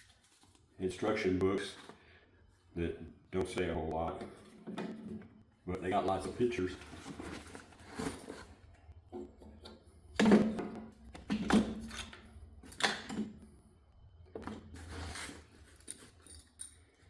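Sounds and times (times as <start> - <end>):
knocks and rustles of handling: 6.0 - 13.4, 14.3 - 17.0.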